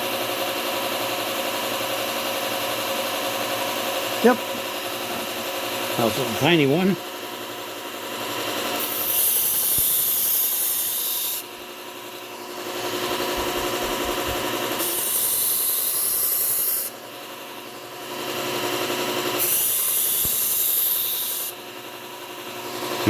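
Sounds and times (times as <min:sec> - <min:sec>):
knife grinding on belt sander: 0:04.0 - 0:23.0
belt sander humming: 0:12.6 - 0:16.9.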